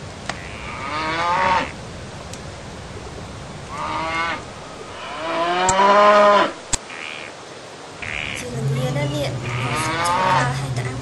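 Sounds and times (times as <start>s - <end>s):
sheep bleating: 9.4s - 10.6s.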